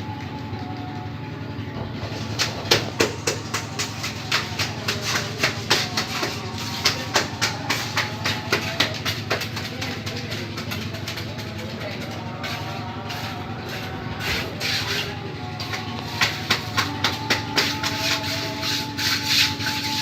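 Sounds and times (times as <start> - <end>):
low engine hum: 0.0 - 17.6
rapid sharp knocks: 2.3 - 11.4, 15.7 - 18.4.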